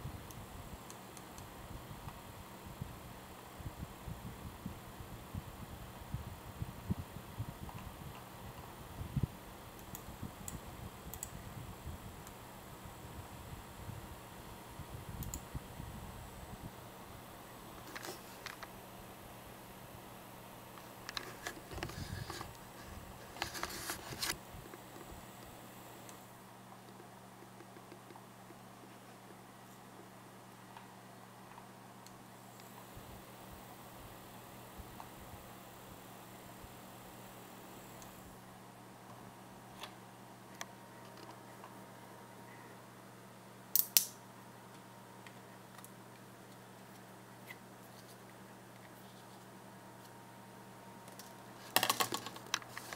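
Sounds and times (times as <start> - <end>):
fan motor humming: 0.0 - 43.6, 44.3 - 52.9
clicks and rustling of handling: 17.8 - 18.7, 20.7 - 25.5, 26.1 - 29.8, 51.0 - 52.9
sharp clicks: 43.7 - 44.2.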